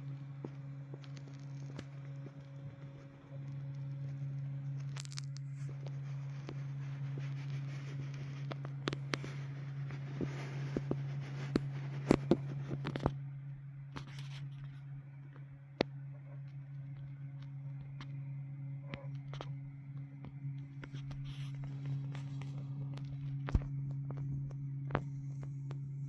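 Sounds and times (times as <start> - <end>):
low machine hum: 0.0 - 26.0.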